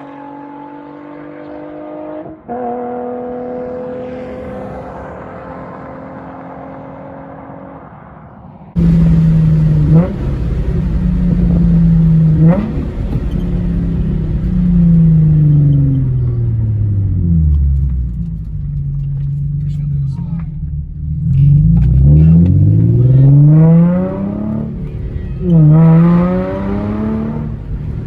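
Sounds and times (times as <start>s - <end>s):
loud car exhaust drone: 1.7s - 18.9s, 19.6s - 28.0s.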